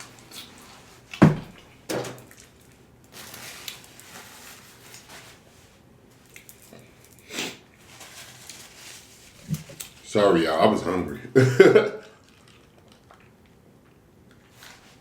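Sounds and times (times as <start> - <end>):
wet chewing and lip smacking: 12.0 - 14.5.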